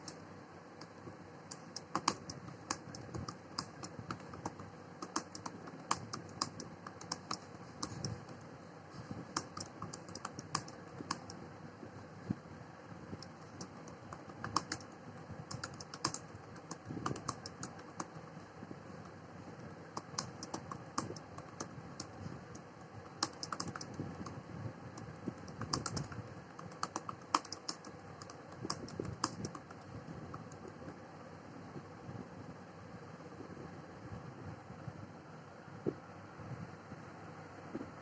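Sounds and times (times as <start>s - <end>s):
keyboard keys clicking: 0.8s - 8.5s, 9.3s - 11.4s, 13.2s - 18.3s, 19.8s - 31.0s.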